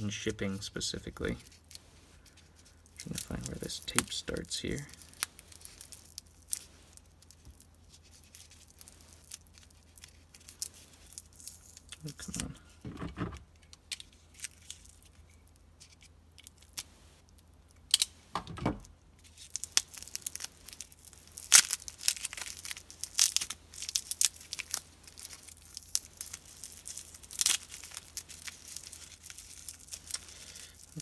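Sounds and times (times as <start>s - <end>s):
plastic wrapping crinkling: 0.9s - 12.8s, 13.8s - 17.5s, 19.2s - 31.0s
tape peeling and tearing: 19.2s - 31.0s.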